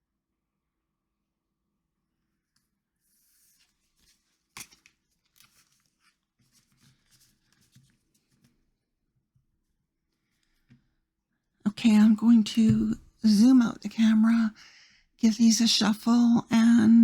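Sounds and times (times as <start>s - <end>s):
cards rustling and sliding: 3.3s - 8.5s.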